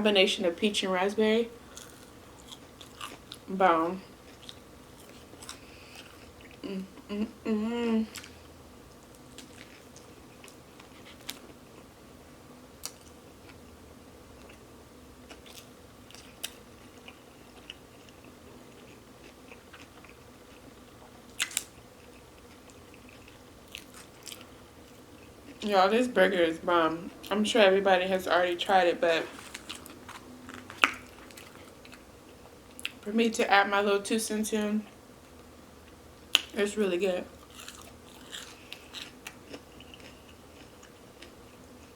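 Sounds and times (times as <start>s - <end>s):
person chewing: 1.7s - 3.5s, 4.2s - 8.5s, 9.2s - 11.9s, 15.3s - 25.6s, 29.3s - 33.0s, 37.4s - 41.9s
person humming: 6.6s - 8.2s.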